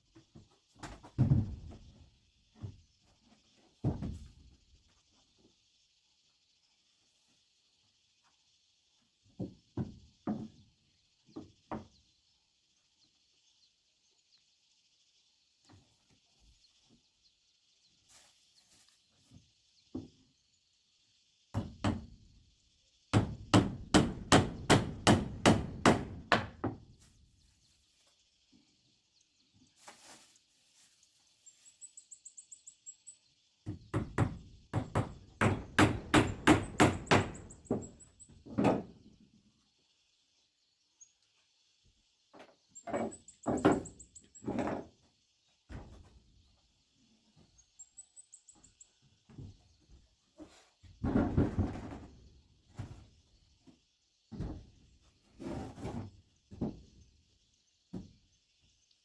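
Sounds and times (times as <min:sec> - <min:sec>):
hammering on wood: 0:21.5 - 0:22.2, 0:23.1 - 0:26.8, 0:33.6 - 0:38.9.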